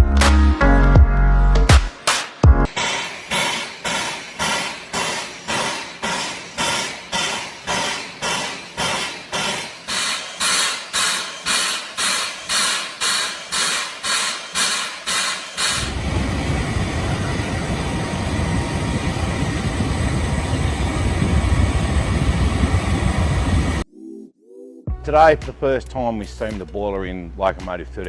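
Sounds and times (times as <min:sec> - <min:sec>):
steam blowing with low rumble: 0:02.7 - 0:23.8
steam exhaust hissing puffs: 0:02.7 - 0:23.8.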